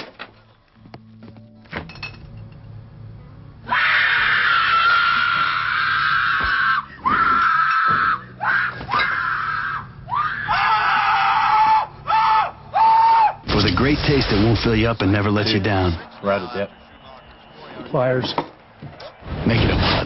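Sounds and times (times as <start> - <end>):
long high-pitched screams: 3.6 - 13.4.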